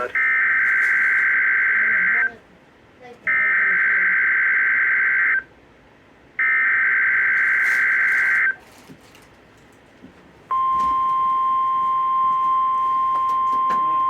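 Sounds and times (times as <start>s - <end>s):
harsh two-tone data buzz: 0.0s - 2.4s, 3.3s - 5.5s, 6.4s - 8.6s
steady alarm tone: 0.0s - 2.4s, 3.3s - 5.5s, 6.4s - 8.6s, 10.5s - 14.0s.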